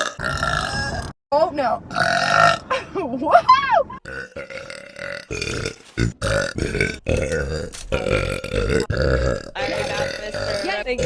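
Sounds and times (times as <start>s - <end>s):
woman belching: 0.0s - 1.1s, 4.0s - 11.0s.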